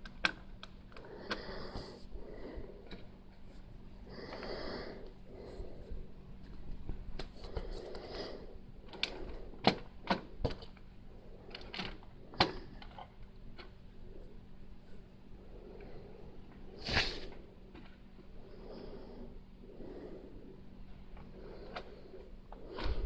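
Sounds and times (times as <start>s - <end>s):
plastic bricks rustling and tapping: 8.9s - 13.8s.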